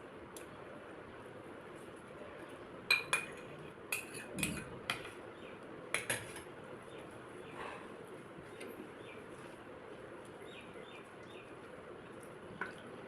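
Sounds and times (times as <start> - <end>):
cutlery clinking against a dish: 2.9 - 5.2.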